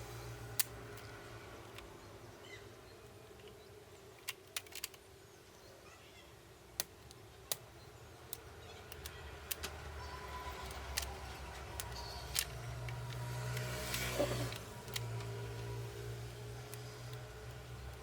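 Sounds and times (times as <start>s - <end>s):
small hard parts clicking: 3.0s - 5.1s, 6.8s - 18.0s.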